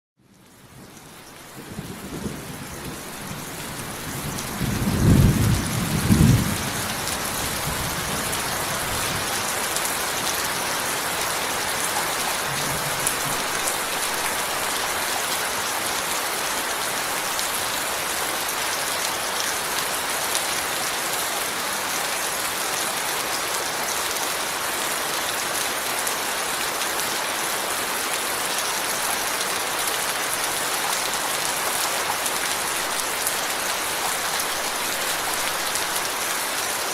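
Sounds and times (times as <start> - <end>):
heavy rainfall: 0.2 - 36.9
thunder rumbling: 1.7 - 9.2.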